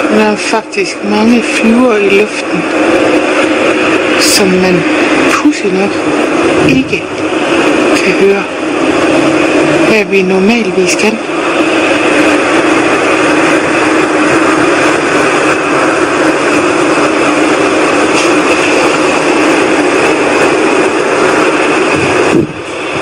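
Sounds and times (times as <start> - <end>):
rushing drone from the sky: 0.0 - 23.0.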